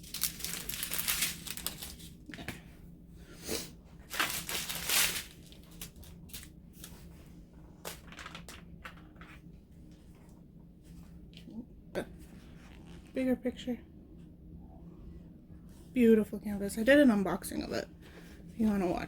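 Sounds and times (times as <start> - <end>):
plastic bags crinkling: 0.0 - 2.4, 4.0 - 7.0.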